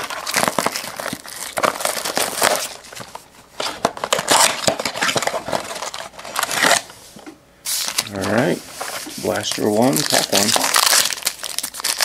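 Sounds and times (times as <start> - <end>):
plastic wrapping tearing and crinkling: 0.0 - 6.8, 9.3 - 12.0.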